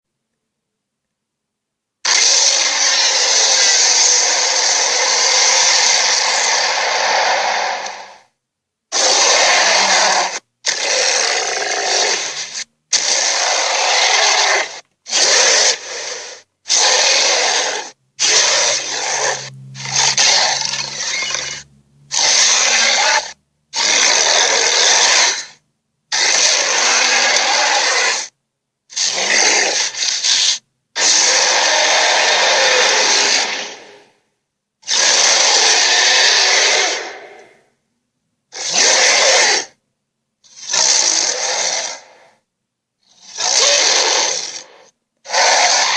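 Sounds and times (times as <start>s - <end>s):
harsh gorilla calls: 8.9s - 28.3s, 34.9s - 37.6s.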